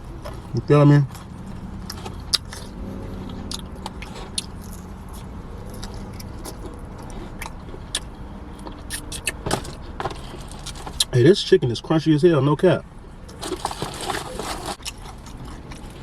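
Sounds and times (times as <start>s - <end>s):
chewing crispy fried chicken: 0.2s - 11.1s, 13.3s - 16.0s
mouth clicks: 7.3s - 9.4s.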